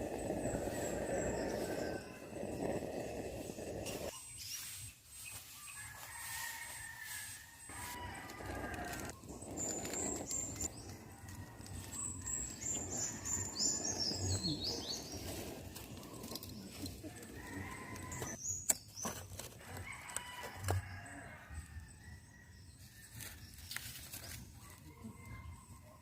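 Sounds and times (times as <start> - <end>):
small birds chirping: 0.0 - 5.9, 8.3 - 19.2.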